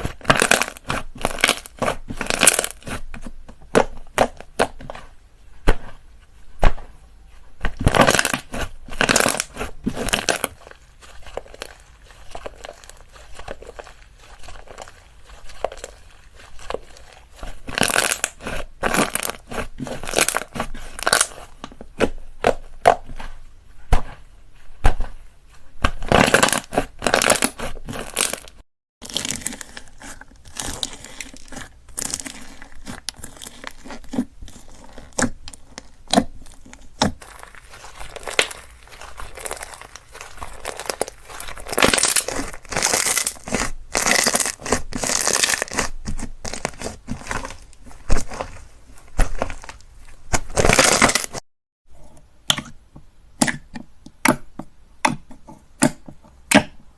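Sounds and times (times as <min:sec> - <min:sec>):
slime crackling and popping: 0:29.0 - 0:51.4.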